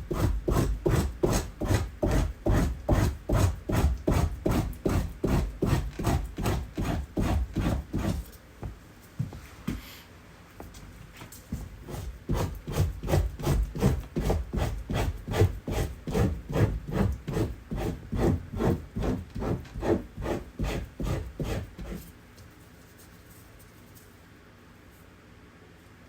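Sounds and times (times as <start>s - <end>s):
blade scraping hide: 11.8s - 22.1s.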